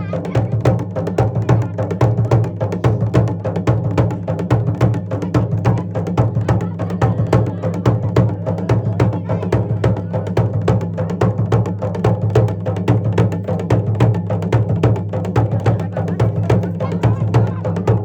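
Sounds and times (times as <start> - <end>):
folk drums playing fast rhythm: 0.0 - 18.0.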